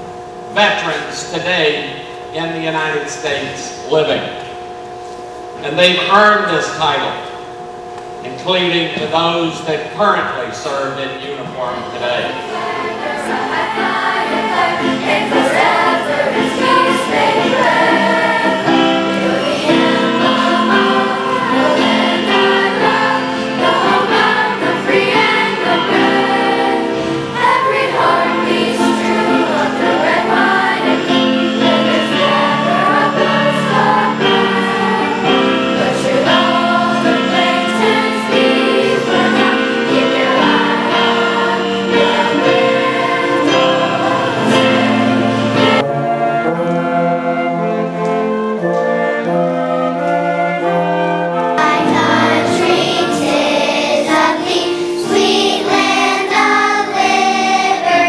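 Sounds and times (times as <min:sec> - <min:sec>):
choir singing: 0:11.6 - 0:58.0.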